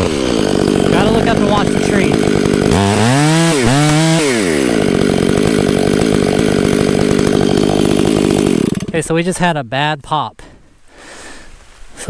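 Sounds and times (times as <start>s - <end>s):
chainsaw cutting into trunk: 0.0s - 9.2s.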